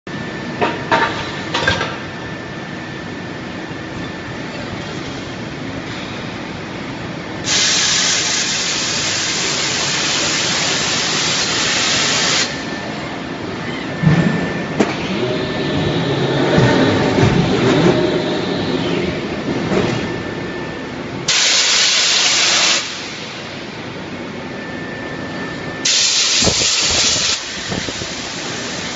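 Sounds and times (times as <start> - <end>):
machinery running: 0.2 - 28.9
loud hiss: 7.4 - 12.7, 21.3 - 23.5, 25.8 - 28.9.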